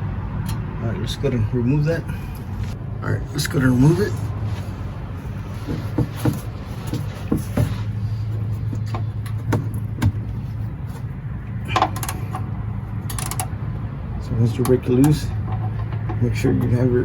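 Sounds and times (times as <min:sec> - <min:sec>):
steady low hum: 0:00.0 - 0:17.0
wrench clicking and knocking: 0:11.7 - 0:13.6.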